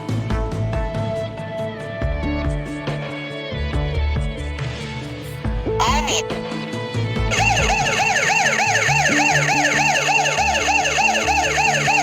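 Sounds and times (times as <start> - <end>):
security alarm siren wailing: 7.3 - 12.0.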